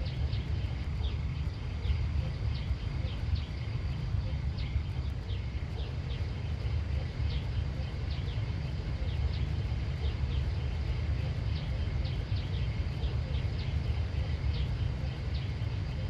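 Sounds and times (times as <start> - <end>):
small birds chirping: 0.0 - 16.0
steady low rumble: 0.0 - 16.0.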